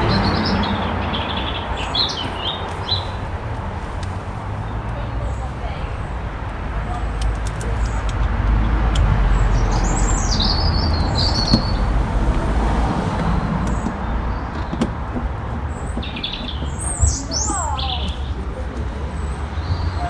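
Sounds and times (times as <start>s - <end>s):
bird chirping: 0.0s - 3.3s, 9.3s - 11.9s, 15.7s - 18.4s
low outdoor rumble: 0.0s - 19.8s.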